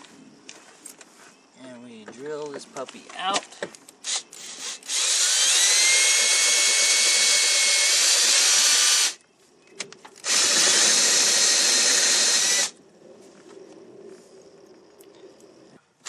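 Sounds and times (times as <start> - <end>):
power drill drilling rivets: 3.3 - 9.2, 10.1 - 12.8.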